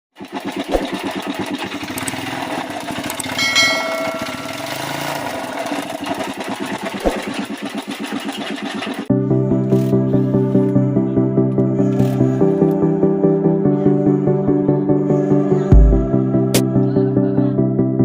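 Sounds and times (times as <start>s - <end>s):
two-stroke engine running: 0.1s - 9.1s
brief metallic ring: 3.4s - 5.0s.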